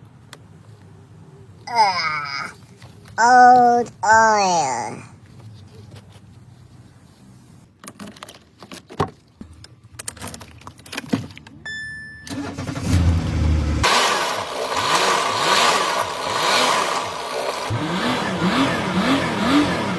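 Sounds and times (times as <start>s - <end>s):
car engine cranking and revving: 12.3s - 19.9s.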